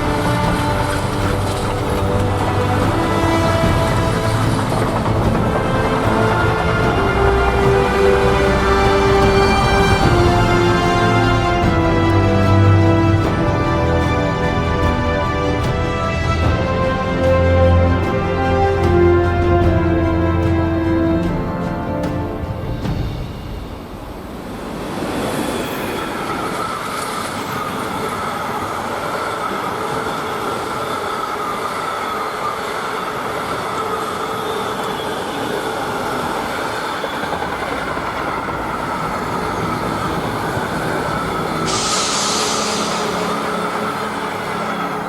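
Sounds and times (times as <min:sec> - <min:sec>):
train wagons rumbling past: 0:00.0 - 0:45.0
brief hiss: 0:41.6 - 0:44.9.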